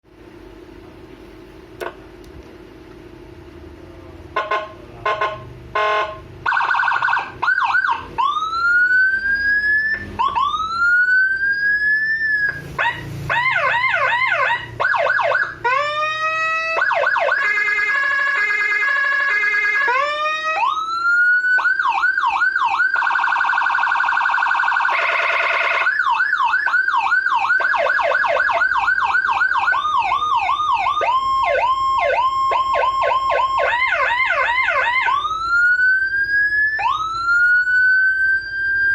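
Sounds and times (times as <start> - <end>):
buzzing horn blast: 4.3 - 6.4
electronic siren wailing and yelping: 5.8 - 38.9.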